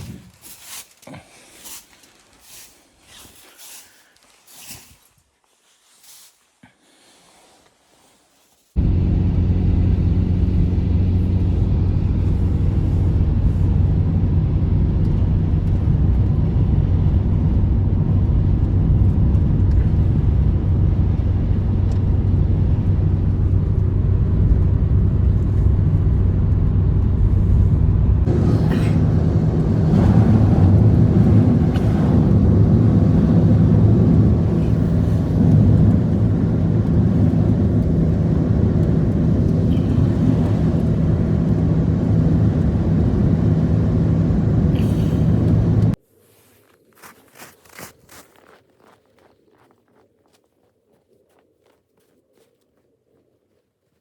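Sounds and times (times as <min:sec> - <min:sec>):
engine running: 0:08.8 - 0:46.0.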